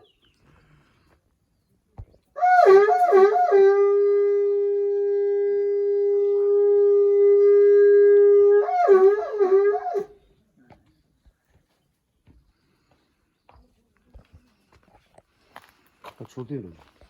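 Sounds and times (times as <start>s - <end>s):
conch shell horn blowing: 2.4s - 10.2s.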